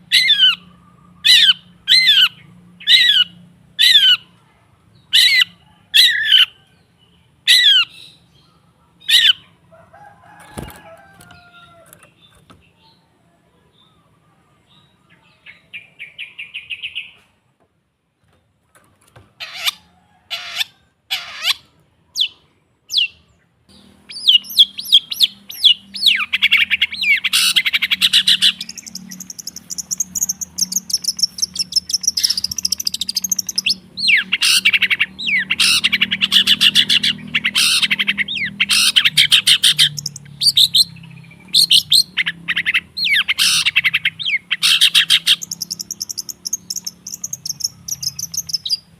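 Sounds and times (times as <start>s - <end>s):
bird trilling and chattering: 0.0s - 4.3s, 20.4s - 48.9s.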